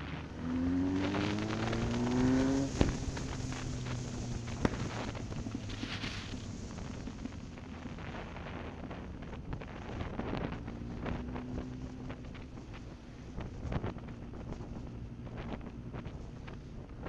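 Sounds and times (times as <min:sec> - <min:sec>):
motorcycle engine drone: 0:00.0 - 0:17.0
wind rushing over microphone: 0:00.0 - 0:17.0.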